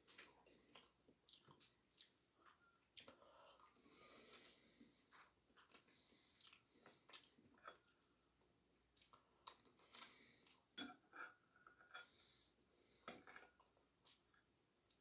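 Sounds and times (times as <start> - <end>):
chewing: 0.0 - 8.1.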